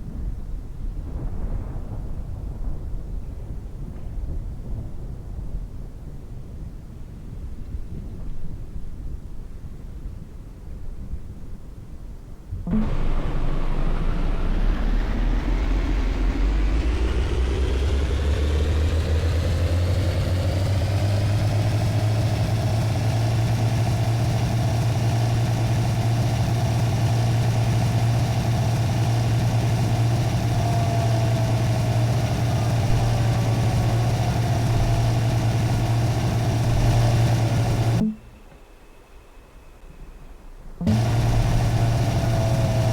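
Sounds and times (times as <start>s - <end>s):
motor winding up and droning: 12.7s - 38.2s, 40.8s - 42.9s.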